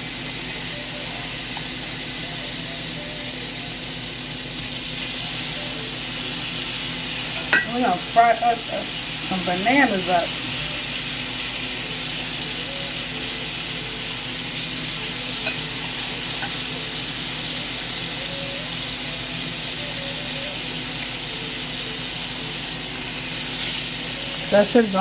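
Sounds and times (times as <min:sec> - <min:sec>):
food sizzling in a pan: 0:00.0 - 0:25.0.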